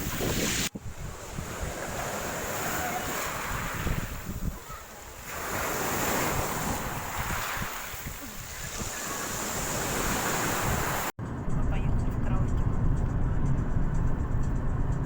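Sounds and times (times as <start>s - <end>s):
sea waves washing ashore: 0.0s - 11.2s
wind buffeting microphone: 0.0s - 15.0s.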